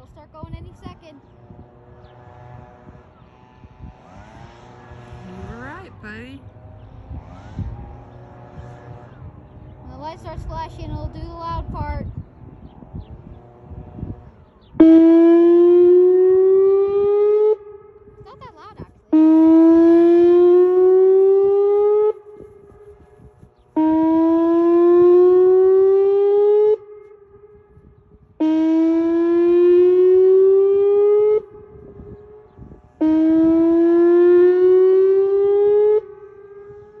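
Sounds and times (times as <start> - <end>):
loud warning siren blasts: 0.0 - 37.0
faint steady siren tone: 12.1 - 37.0.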